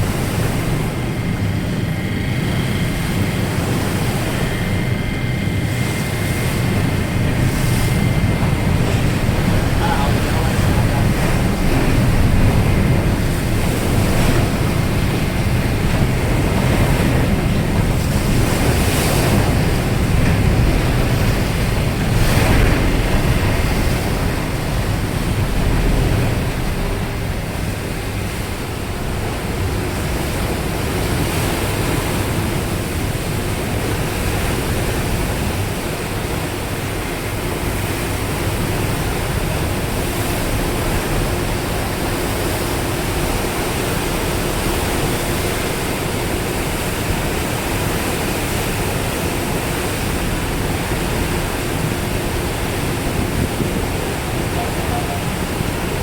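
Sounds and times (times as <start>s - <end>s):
water rushing past ferry: 0.0s - 56.0s
wind buffeting microphone: 0.0s - 56.0s
low rumble: 4.6s - 29.2s.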